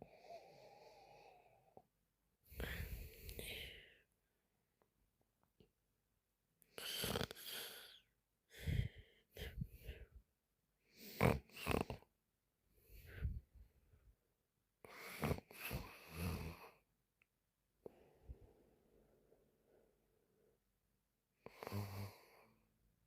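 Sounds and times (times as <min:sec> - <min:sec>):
woman snoring: 0:00.0 - 0:01.7, 0:02.5 - 0:03.8, 0:06.8 - 0:08.0, 0:11.0 - 0:12.1, 0:14.9 - 0:16.8, 0:21.4 - 0:22.6.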